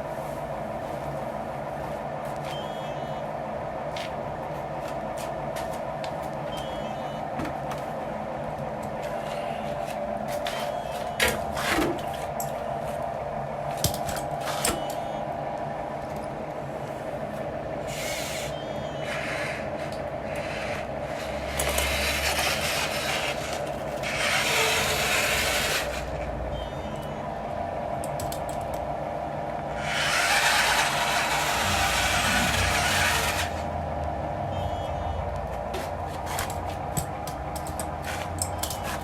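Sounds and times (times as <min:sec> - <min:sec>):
electric motor whine: 0:21.6 - 0:26.8, 0:29.7 - 0:35.0
machine clicks: 0:36.4 - 0:39.0.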